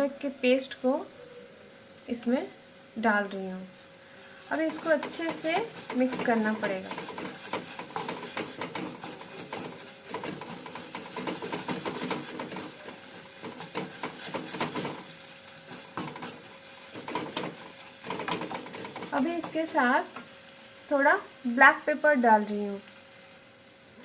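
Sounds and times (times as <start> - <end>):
paste sizzling: 3.0 - 24.0
spatula scraping a pan: 4.5 - 20.3.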